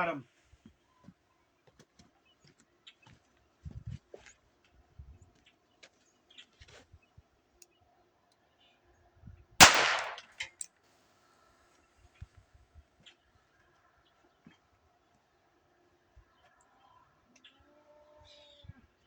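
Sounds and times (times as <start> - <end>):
revolver shot with echo: 9.6 - 10.3.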